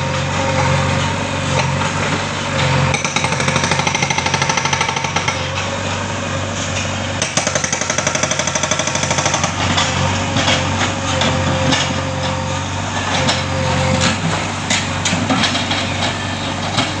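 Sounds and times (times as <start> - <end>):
hydraulic breaker hammering rock: 0.0 - 12.4
backhoe engine running: 0.0 - 17.0.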